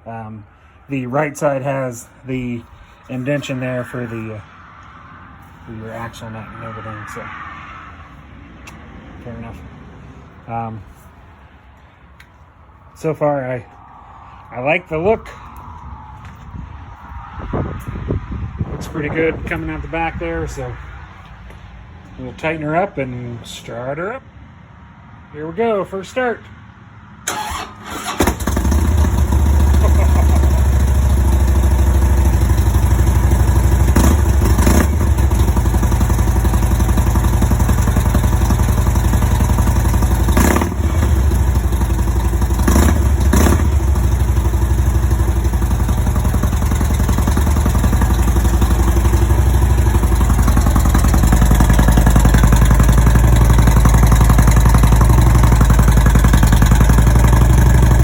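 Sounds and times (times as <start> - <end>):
motorcycle engine idling: 27.4 - 58.0.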